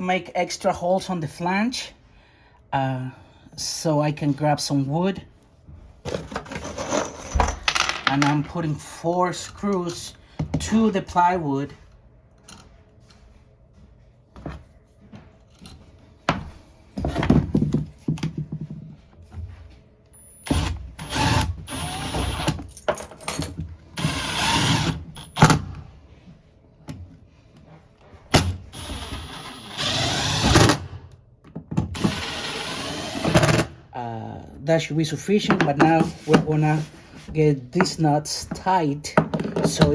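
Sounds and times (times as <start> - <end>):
power drill driving screws: 20.5 - 22.6, 24.0 - 25.5, 28.8 - 30.9, 32.0 - 33.7.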